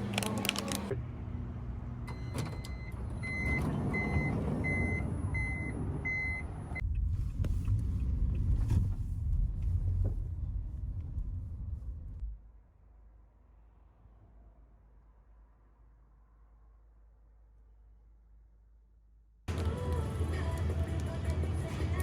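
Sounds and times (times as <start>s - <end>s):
vehicle engine rumbling: 0.0s - 12.9s.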